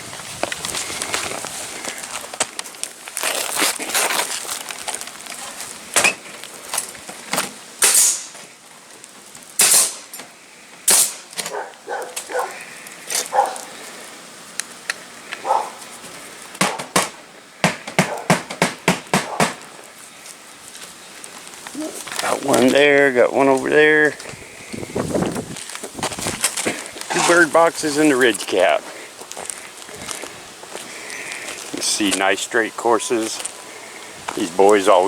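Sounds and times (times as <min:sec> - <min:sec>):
footsteps on roof shingles: 0:00.0 - 0:07.6, 0:23.5 - 0:32.2
sharp knocks: 0:16.6 - 0:19.6.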